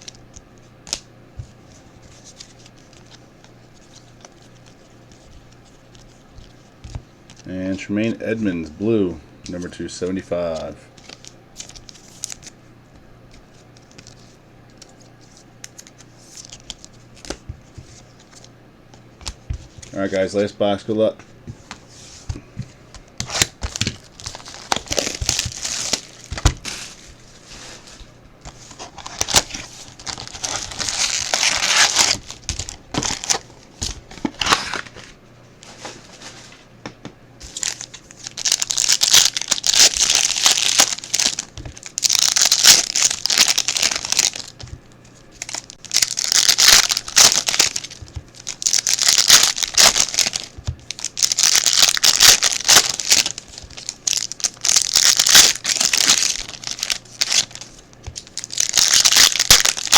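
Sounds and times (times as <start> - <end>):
wrappers torn and crinkled: 23.2 - 27.0, 28.7 - 35.1, 37.5 - 59.9.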